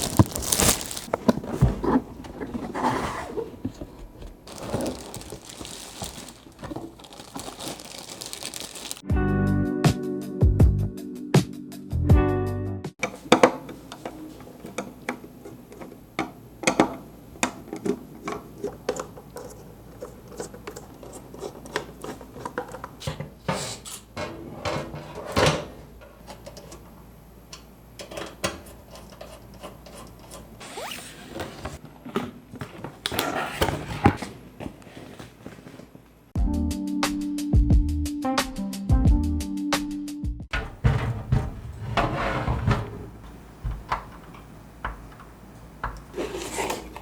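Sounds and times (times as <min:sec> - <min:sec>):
scraping and rustling: 0:00.0 - 0:09.0, 0:31.2 - 0:36.0, 0:40.5 - 0:44.3, 0:46.1 - 0:47.0.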